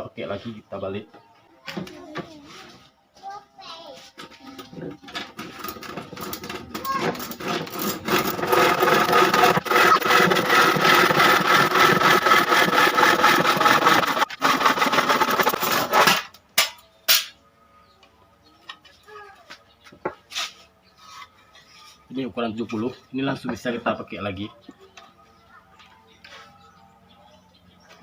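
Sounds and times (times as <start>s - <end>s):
saw cutting wooden board: 5.1s - 16.3s.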